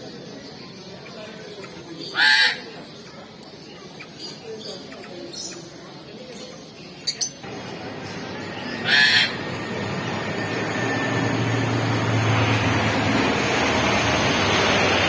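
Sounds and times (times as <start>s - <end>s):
steady background noise: 0.0s - 15.0s
crow cawing: 8.7s - 9.5s.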